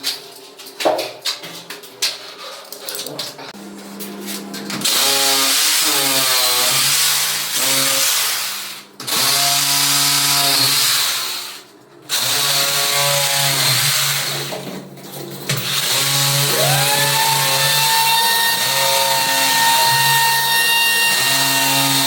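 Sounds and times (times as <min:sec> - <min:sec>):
electric power tool whine: 0:15.6 - 0:22.0.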